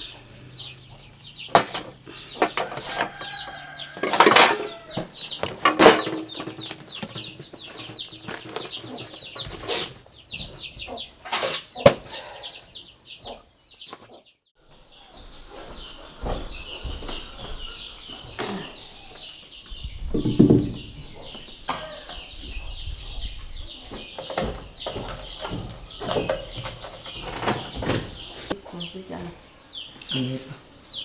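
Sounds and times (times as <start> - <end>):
poultry peeping: 0.0 - 31.0
sharp knocks: 20.0 - 22.0.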